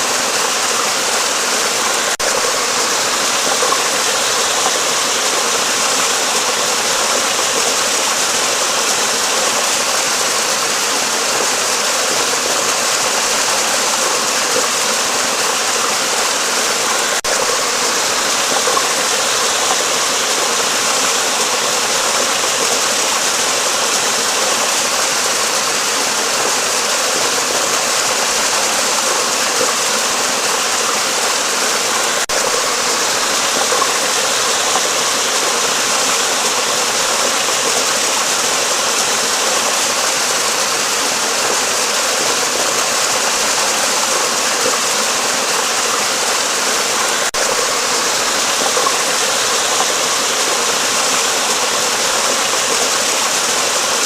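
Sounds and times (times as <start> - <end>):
water rushing under a bridge: 0.0 - 54.0.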